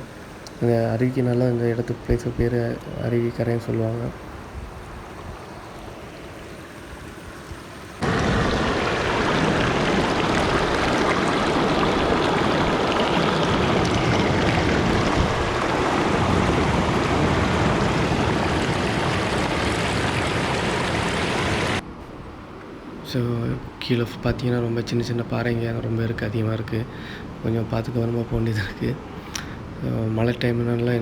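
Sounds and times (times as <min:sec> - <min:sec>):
water rushing over waterfall: 0:08.0 - 0:21.8.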